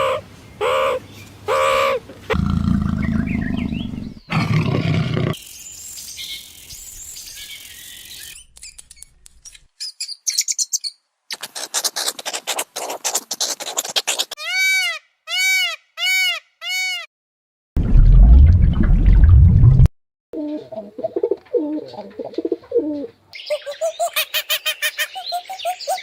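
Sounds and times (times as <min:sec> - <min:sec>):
birds chirping and twittering: 0:02.7 - 0:11.0, 0:21.8 - 0:26.0.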